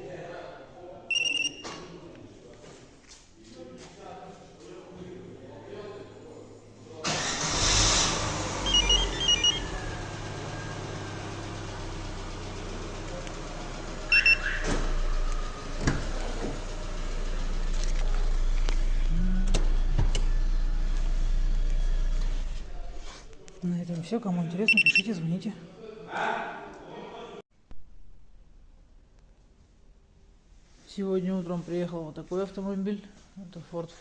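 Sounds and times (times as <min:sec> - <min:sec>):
short electronic beeps: 0:01.1 - 0:01.7, 0:08.6 - 0:09.8, 0:14.1 - 0:14.6, 0:24.7 - 0:25.1
car engine starting and idling: 0:07.0 - 0:23.3.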